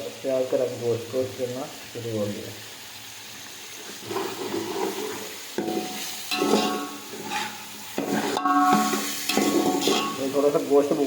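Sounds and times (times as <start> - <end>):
meat sizzling in a pot: 0.0 - 11.0
spoon scraping a pot: 4.0 - 10.3.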